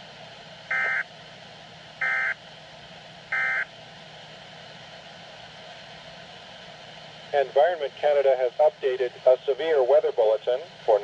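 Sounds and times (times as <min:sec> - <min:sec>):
radio hiss: 0:06.6 - 0:11.0.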